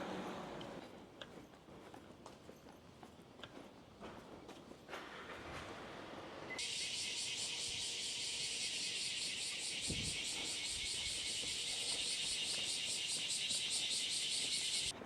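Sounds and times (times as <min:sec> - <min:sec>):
cicadas chorus pulsing: 0:06.6 - 0:14.9.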